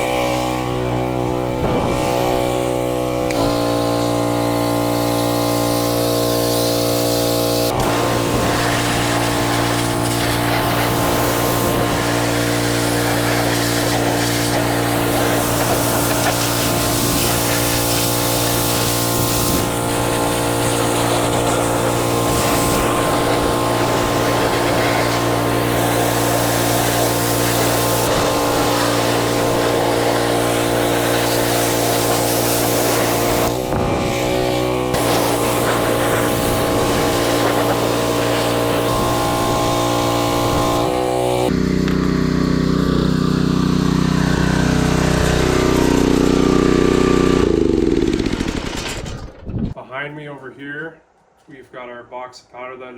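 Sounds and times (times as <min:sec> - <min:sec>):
water spray hissing: 0:00.0 - 0:41.5
small gasoline engine running: 0:00.0 - 0:49.4.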